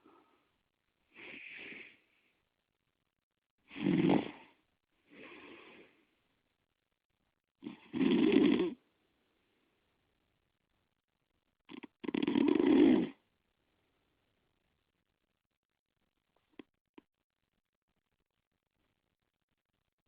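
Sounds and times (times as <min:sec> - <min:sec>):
soft hissy breath: 0:00.0 - 0:02.5, 0:04.4 - 0:06.3
loud snoring: 0:03.7 - 0:04.6, 0:07.6 - 0:08.8, 0:11.7 - 0:13.2.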